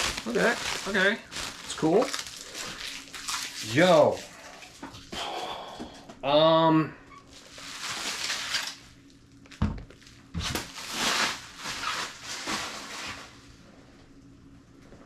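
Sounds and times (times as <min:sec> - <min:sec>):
bubble wrap and tape crinkling: 0:00.0 - 0:05.1, 0:07.2 - 0:13.6.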